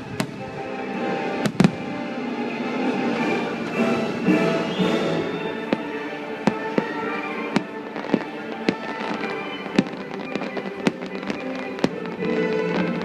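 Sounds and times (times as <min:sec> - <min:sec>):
fireworks bangs: 0:00.0 - 0:00.6, 0:01.4 - 0:01.9, 0:05.6 - 0:13.0
orchestral music: 0:00.0 - 0:13.0.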